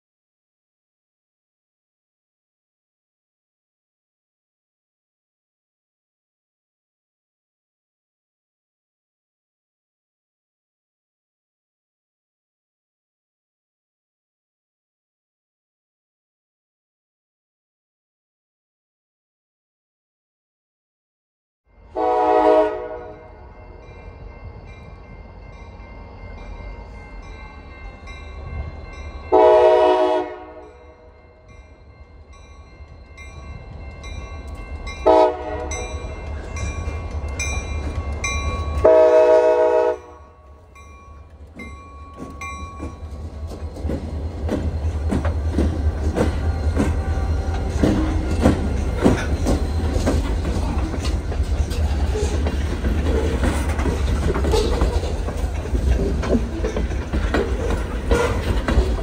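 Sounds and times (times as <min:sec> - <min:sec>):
train rumble: 0:21.7 - 0:59.0
locomotive air horn blasts: 0:22.0 - 0:23.4, 0:29.3 - 0:31.0, 0:35.0 - 0:35.8, 0:38.8 - 0:40.4, 0:58.1 - 0:58.6
train wheels clacking: 0:40.8 - 0:59.0.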